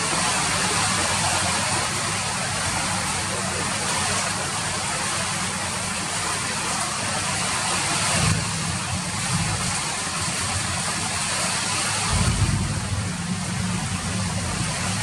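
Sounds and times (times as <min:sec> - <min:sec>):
steady rain falling: 0:00.0 - 0:15.0
low rumble: 0:12.1 - 0:15.0.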